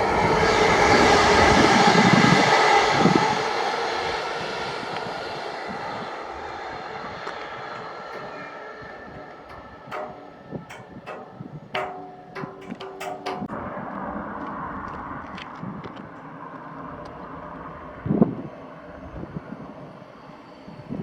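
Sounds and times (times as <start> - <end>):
train rumbling past: 3.9 - 13.8.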